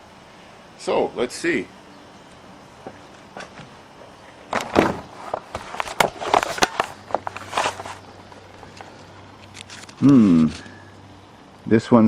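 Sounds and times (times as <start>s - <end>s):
paper rustling: 4.5s - 10.8s.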